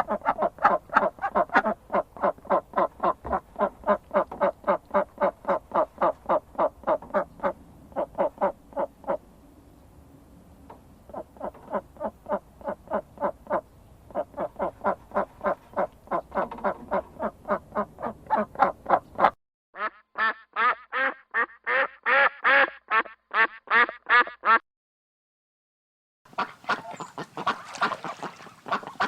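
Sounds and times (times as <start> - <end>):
ducks quacking: 0.0 - 9.2, 11.1 - 24.6, 26.3 - 29.0.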